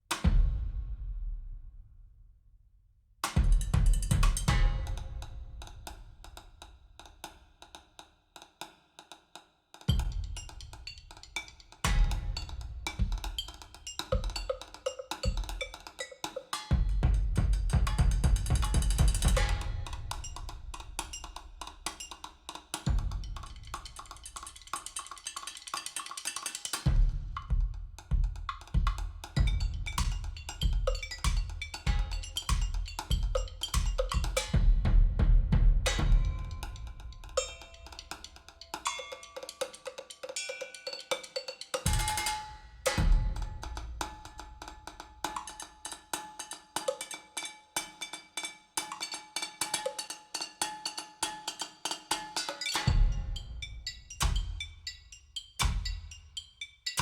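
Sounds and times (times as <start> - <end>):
percussion-heavy music: 0.0 - 2.4, 3.2 - 57.0.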